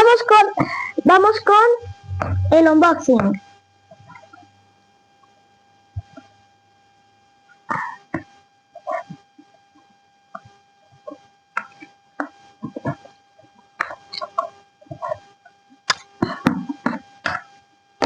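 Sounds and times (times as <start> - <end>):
faint steady high tone: 0.9 - 3.5.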